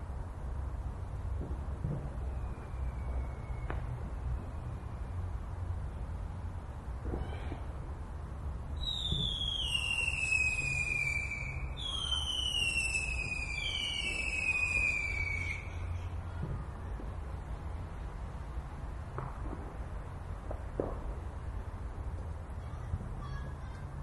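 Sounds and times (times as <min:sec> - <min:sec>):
whistling fireworks: 0:01.2 - 0:05.3, 0:07.0 - 0:08.0, 0:08.7 - 0:17.4
faint firework pops: 0:01.3 - 0:02.2, 0:03.6 - 0:04.5, 0:07.0 - 0:07.7, 0:08.8 - 0:09.8, 0:13.1 - 0:15.5, 0:16.3 - 0:17.2, 0:19.1 - 0:21.3.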